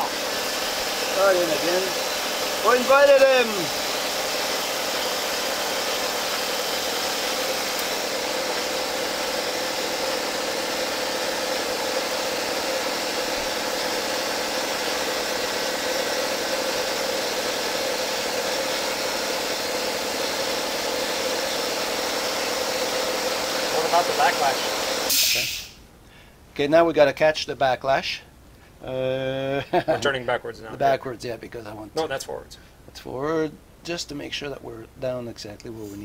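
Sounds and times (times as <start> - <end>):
motor humming steadily: 0.0 - 25.7.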